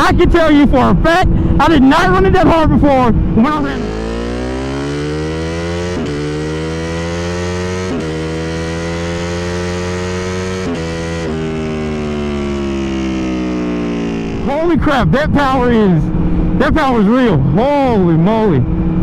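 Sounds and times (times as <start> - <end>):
motorcycle engine at full throttle: 0.0 - 19.0.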